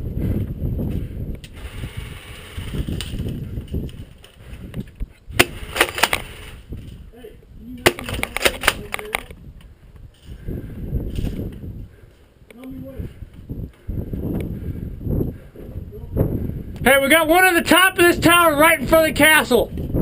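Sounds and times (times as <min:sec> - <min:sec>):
microphone handling noise: 0:00.0 - 0:07.1
wind rumble on microphone: 0:00.0 - 0:20.0.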